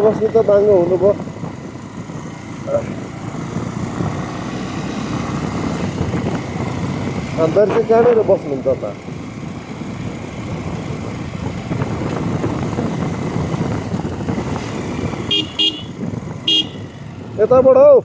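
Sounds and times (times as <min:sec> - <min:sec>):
motorcycle engine rumble: 0:00.0 - 0:18.0
road and wind noise: 0:00.0 - 0:18.0
horn beeps: 0:15.3 - 0:16.9.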